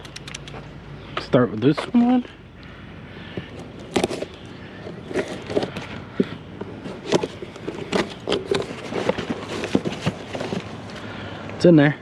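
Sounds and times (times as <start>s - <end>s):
container being cut and handled: 3.8s - 4.4s.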